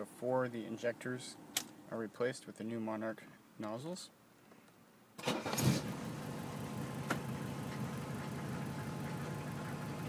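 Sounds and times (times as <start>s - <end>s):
diesel engine cranking and idling: 5.2s - 10.0s.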